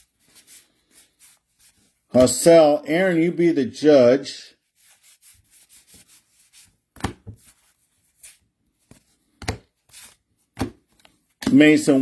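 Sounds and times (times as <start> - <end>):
cards rubbing and sliding: 0.0 - 2.6, 4.6 - 12.0
cards tapping: 2.2 - 2.5, 6.9 - 12.0.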